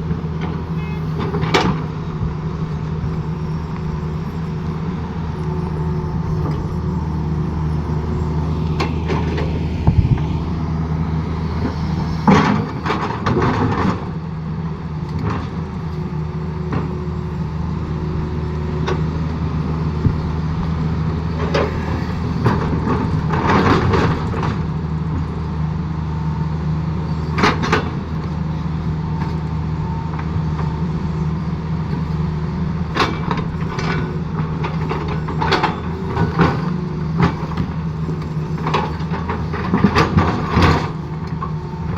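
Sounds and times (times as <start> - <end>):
excavator diesel engine running: 0.0 - 41.9
machine clanking and scraping: 1.2 - 2.0, 5.3 - 10.6, 11.3 - 14.2, 19.8 - 24.7, 32.9 - 41.9.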